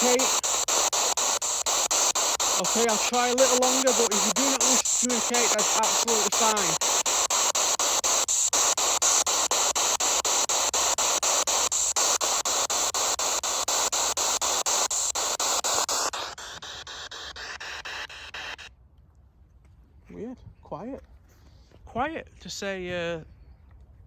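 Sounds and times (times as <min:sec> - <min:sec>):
chopped radio static hiss: 0:00.0 - 0:18.7.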